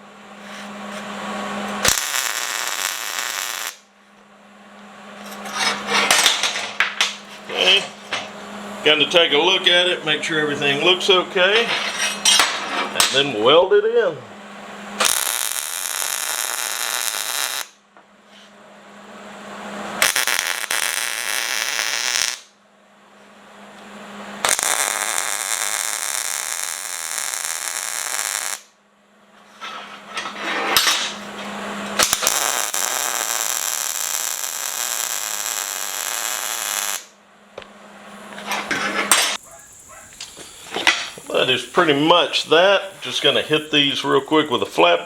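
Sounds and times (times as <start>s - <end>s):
arc welding crackling sizzle: 0.0s - 3.9s, 14.8s - 17.8s, 19.0s - 22.6s, 23.7s - 28.8s, 31.1s - 37.2s, 39.1s - 45.0s
steady low hum: 0.0s - 36.1s, 37.0s - 45.0s.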